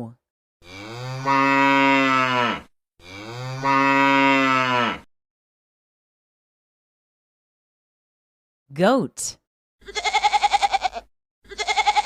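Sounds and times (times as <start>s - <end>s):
cow mooing: 0.6s - 5.1s.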